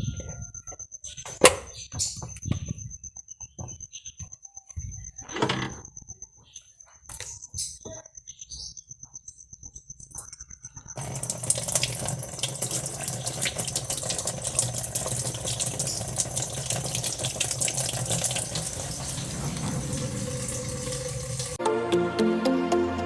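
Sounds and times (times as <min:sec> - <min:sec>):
water running through washing machine: 0:11.0 - 0:21.6
low hum: 0:18.5 - 0:21.6.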